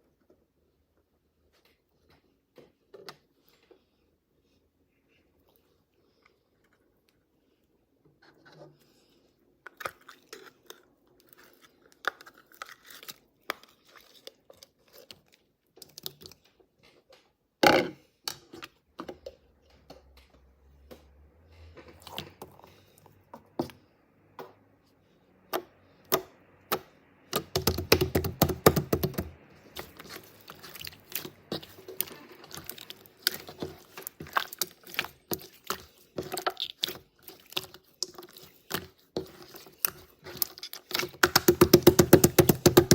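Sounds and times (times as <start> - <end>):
slime squished by hand: 26.1 - 42.9.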